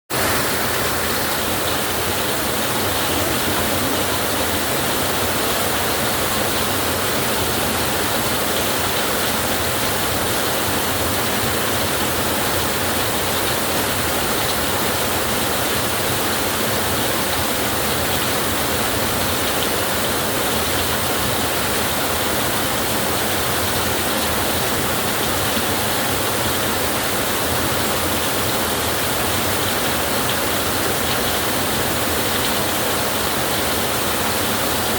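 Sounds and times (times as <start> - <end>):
heavy rain on a tin roof: 0.1 - 34.9.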